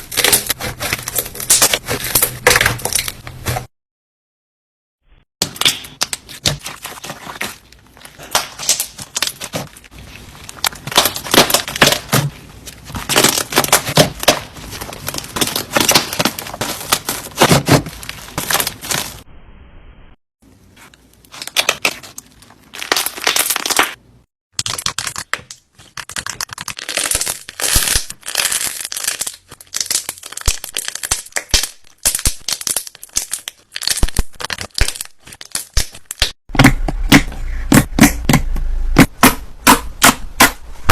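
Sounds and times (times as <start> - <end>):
slime crackling and popping: 24.6 - 36.4.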